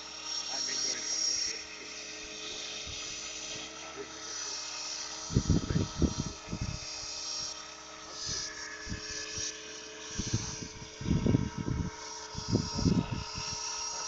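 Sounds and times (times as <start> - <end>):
model helicopter whine: 0.0 - 14.0
wind buffeting microphone: 5.3 - 6.8, 10.1 - 13.6.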